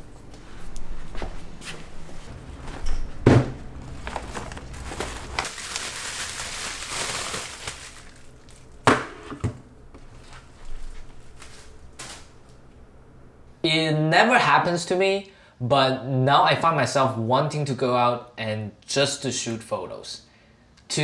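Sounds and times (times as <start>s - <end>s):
handling noises: 0.0s - 13.6s.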